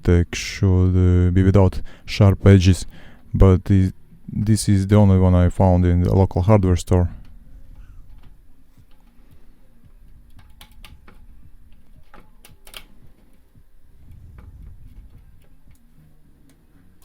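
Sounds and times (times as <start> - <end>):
low rumble of handling: 7.0 - 17.0.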